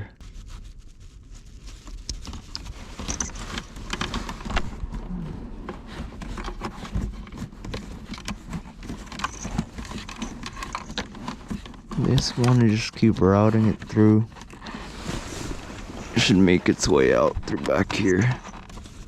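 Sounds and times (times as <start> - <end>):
plastic trim rustling and clicking: 5.6 - 19.0.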